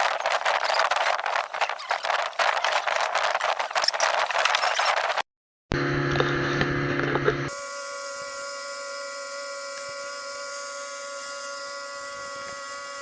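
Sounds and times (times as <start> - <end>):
lower hum: 5.7 - 13.0
steady machine hum: 5.7 - 13.0.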